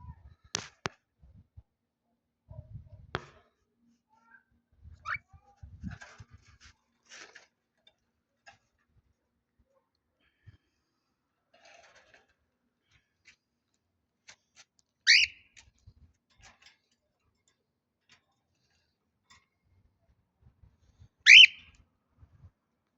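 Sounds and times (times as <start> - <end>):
parrot whistling: 21.3 - 21.6.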